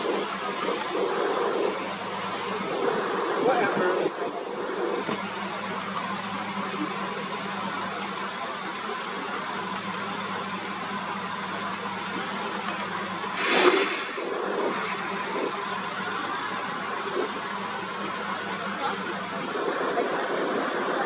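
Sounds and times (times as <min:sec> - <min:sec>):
low engine hum: 0:00.0 - 0:21.0
loud rushing burst: 0:13.2 - 0:17.7.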